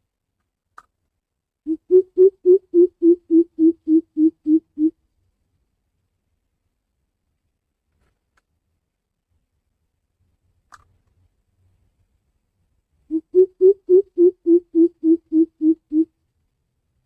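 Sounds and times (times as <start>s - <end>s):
bird giving deep hoots: 1.7s - 5.0s, 13.1s - 16.1s.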